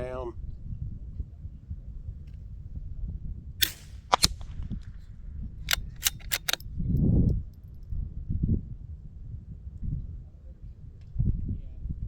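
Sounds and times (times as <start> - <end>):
sharp clicks: 3.6 - 4.5, 5.7 - 6.6
rifle shot cracking: 3.6 - 5.0, 5.7 - 6.6.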